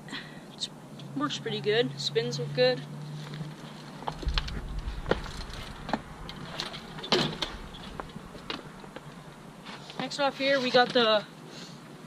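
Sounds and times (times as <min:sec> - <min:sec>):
brief low rumble: 0:04.1 - 0:09.8.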